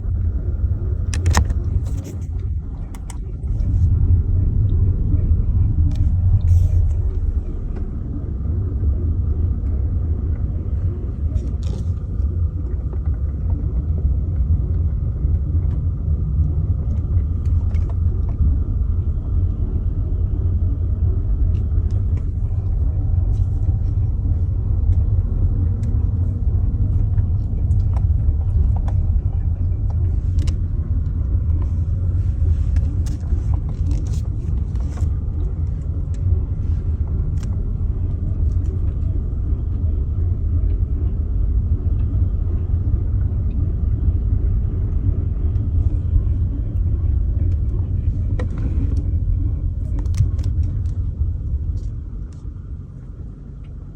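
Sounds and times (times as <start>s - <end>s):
car road and engine rumble: 0.0s - 53.9s.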